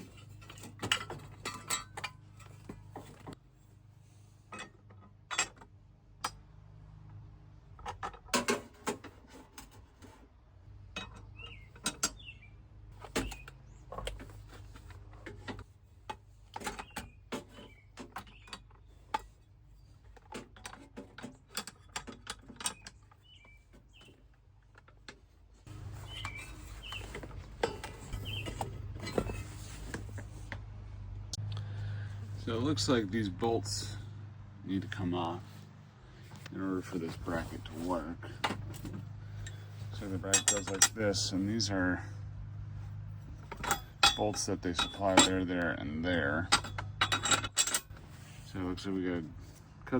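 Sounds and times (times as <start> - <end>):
hand tools clinking on metal: 0.0 - 3.3, 11.0 - 12.3, 36.4 - 42.1, 43.4 - 48.9.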